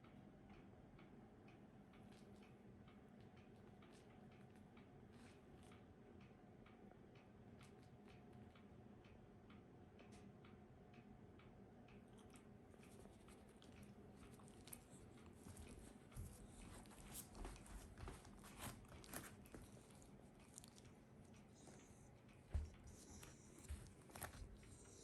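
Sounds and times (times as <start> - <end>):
soft irregular clicks: 0.0 - 25.0.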